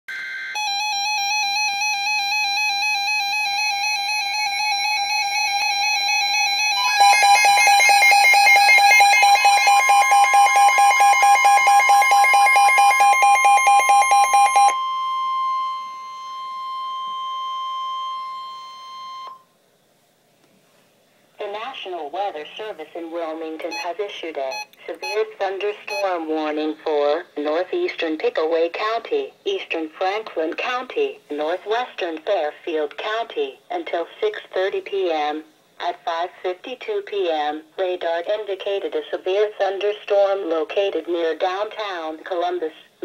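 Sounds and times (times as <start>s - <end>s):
steady high tone: 4.4s - 19.5s
warbling electronic tone: 6.6s - 16.6s.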